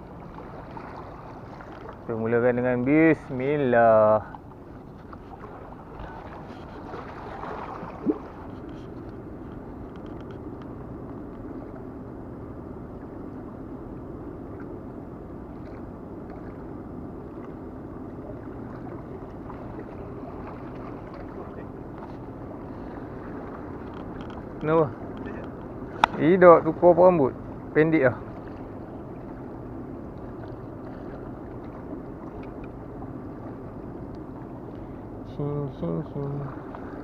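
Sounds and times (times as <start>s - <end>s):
sea waves on rocky shore: 0.0s - 9.9s, 17.9s - 37.0s.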